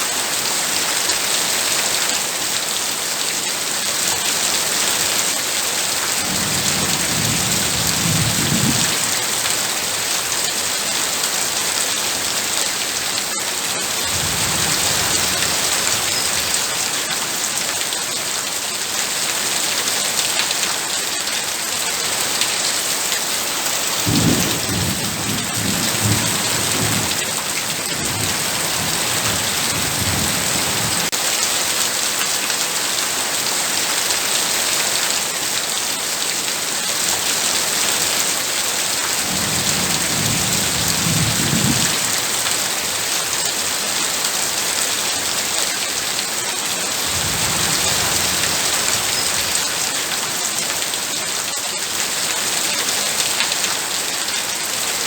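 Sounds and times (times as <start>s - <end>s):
heavy rain falling: 0.0s - 55.0s
thunder rumbling: 6.2s - 9.2s, 24.1s - 31.1s, 39.3s - 42.3s, 47.0s - 49.6s.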